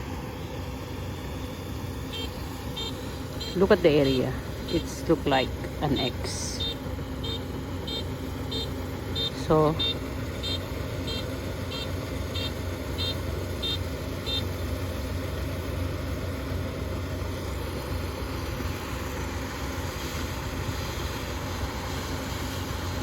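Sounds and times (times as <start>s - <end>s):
combine harvester diesel engine: 0.0s - 23.0s
high-pitched warning beeper: 2.1s - 14.4s.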